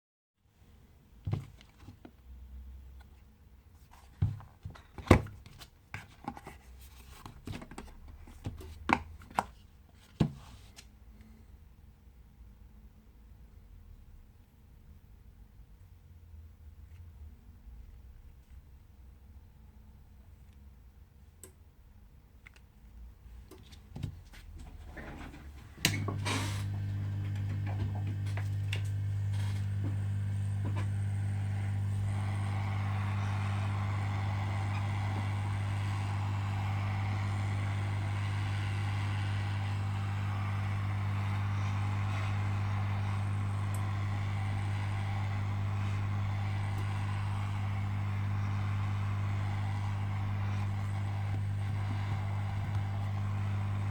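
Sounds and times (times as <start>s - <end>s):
heat gun blowing air: 25.9s - 53.9s.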